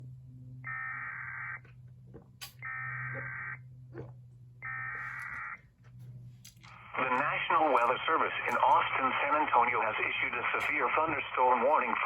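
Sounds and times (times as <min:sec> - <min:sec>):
radio hum: 0:00.6 - 0:01.7, 0:02.4 - 0:05.6, 0:06.6 - 0:12.0.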